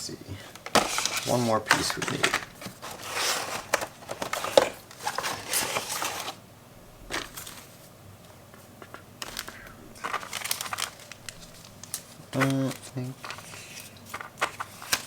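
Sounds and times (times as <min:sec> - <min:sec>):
plastic packaging rustling: 0:00.6 - 0:06.4, 0:07.0 - 0:07.9, 0:09.2 - 0:15.0.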